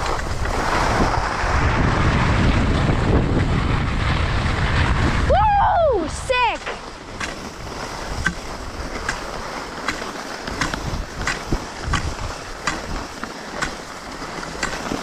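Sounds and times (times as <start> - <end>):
short sharp ski scrapes: 0.0 - 2.2, 6.4 - 15.0
skis hissing over snow: 0.0 - 15.0
wind buffeting microphone: 0.0 - 15.0.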